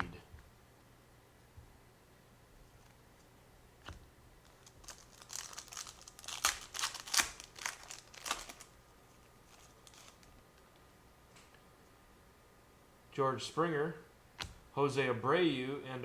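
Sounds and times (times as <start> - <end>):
foil wrapper tearing and crinkling: 4.4 - 8.8, 9.4 - 10.3.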